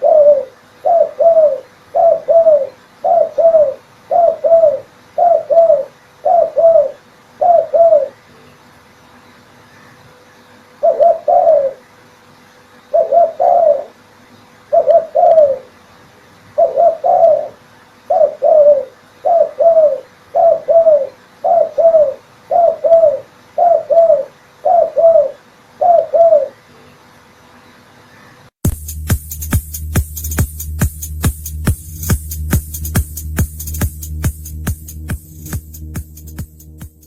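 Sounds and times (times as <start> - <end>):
dove cooing: 0.0 - 8.3, 10.8 - 11.9, 12.9 - 14.0, 14.7 - 15.8, 16.5 - 26.7
electronic music: 28.6 - 37.0.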